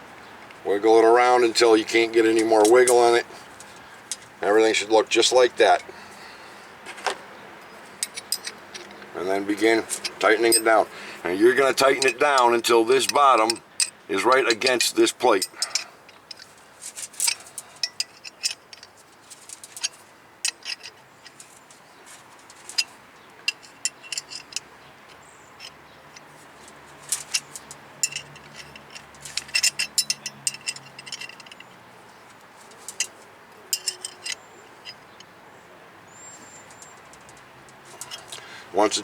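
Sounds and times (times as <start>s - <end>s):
flaring tool metallic clicks: 32.8s - 35.3s.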